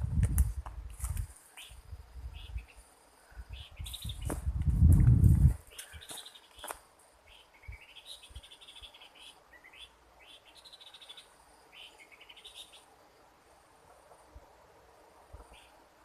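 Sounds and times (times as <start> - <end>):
high insect hiss: 0.0 - 16.0
animal chirping trills: 7.3 - 12.9.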